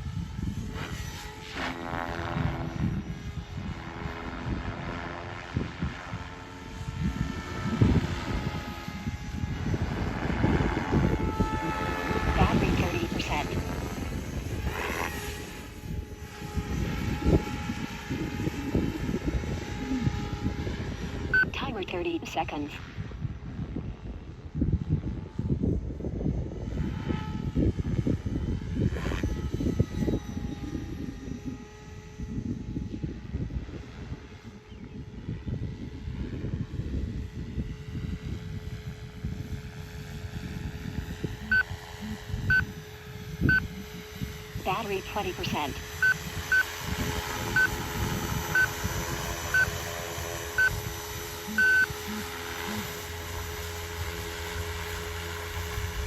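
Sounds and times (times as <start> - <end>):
helicopter rotor rumble: 0.0 - 56.0
short electronic beeps: 21.4 - 22.6, 41.5 - 42.6, 44.8 - 46.6, 51.5 - 52.9
faint steady whine: 41.2 - 56.0.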